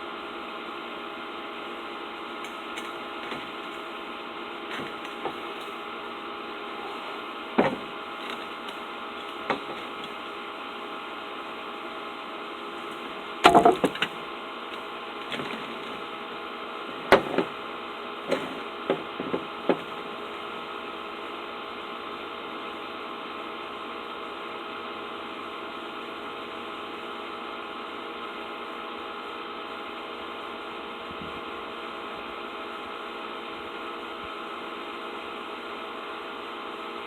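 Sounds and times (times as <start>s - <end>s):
steady hum: 0.0s - 37.0s
sharp knocks and clatters: 7.6s - 8.6s, 9.2s - 10.2s, 13.4s - 14.2s, 17.0s - 17.6s, 18.3s - 20.0s.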